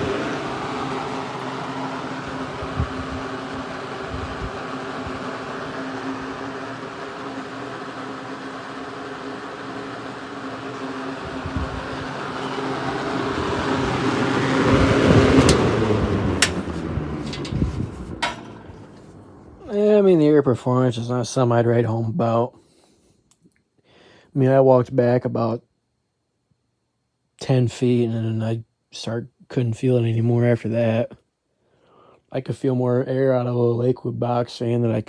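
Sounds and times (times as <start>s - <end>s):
box fan humming: 0.0s - 20.3s.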